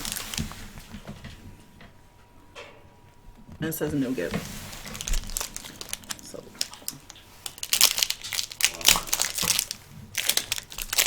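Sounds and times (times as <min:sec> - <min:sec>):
plastic wrapper crinkling: 0:00.0 - 0:00.9, 0:04.3 - 0:11.0.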